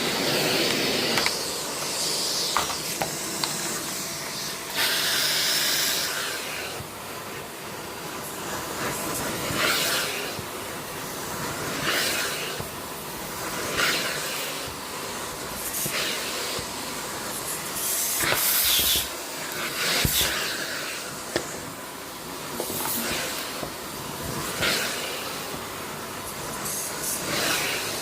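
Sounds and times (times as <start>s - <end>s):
vacuum cleaner running: 0.0s - 28.0s.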